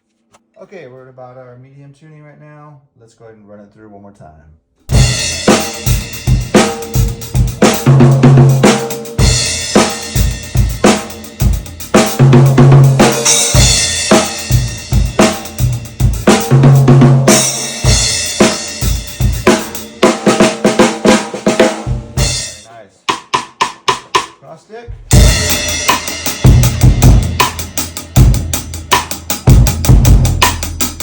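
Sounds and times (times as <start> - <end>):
drum kit playing: 4.9 - 31.0
low drum ringing: 24.9 - 28.9.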